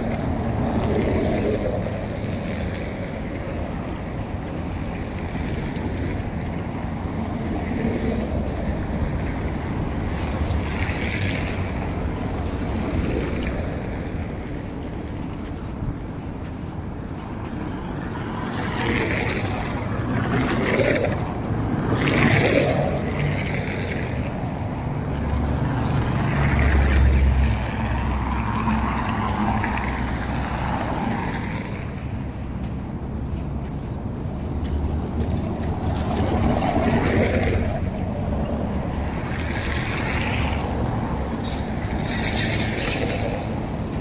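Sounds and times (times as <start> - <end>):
traffic rumbling past: 0.0 - 44.0.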